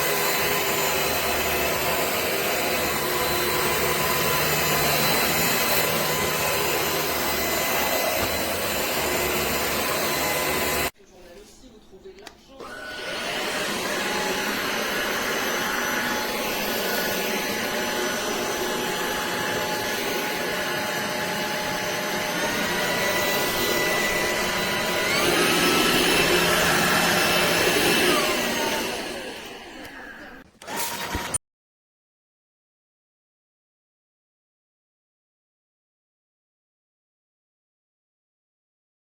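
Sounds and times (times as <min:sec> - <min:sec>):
stick vacuum whining: 0:00.0 - 0:11.0, 0:12.0 - 0:31.4.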